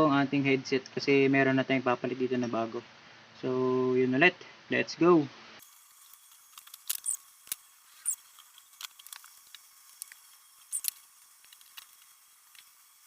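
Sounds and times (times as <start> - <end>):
short high squeaks: 6.0 - 9.3, 10.0 - 12.0.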